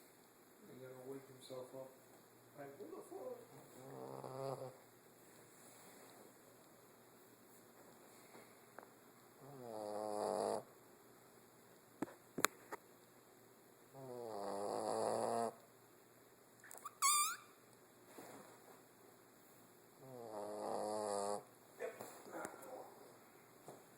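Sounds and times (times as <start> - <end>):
dog snoring: 3.5 - 4.8, 9.4 - 10.7, 13.9 - 15.6, 20.0 - 21.5
short high squeak: 16.8 - 17.6.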